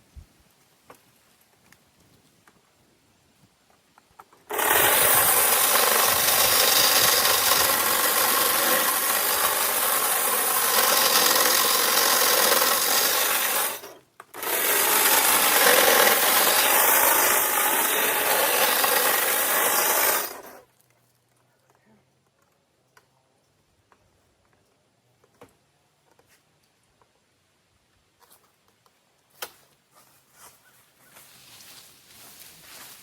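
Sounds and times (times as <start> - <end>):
power saw cutting branches: 4.4 - 20.6.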